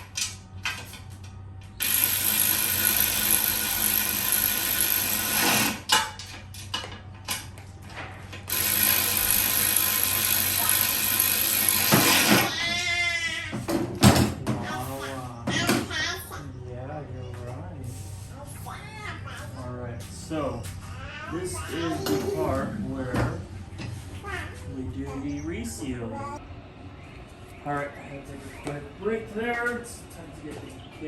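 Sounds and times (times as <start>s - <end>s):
power tool running: 1.8s - 6.0s, 8.4s - 12.6s.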